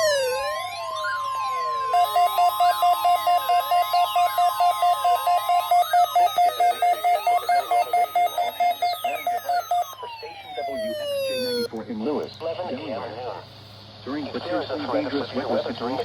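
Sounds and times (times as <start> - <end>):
rapid beeping: 0.0 - 11.7
siren-like sliding tone: 0.0 - 11.7
steady warning alarm tone: 0.0 - 11.7.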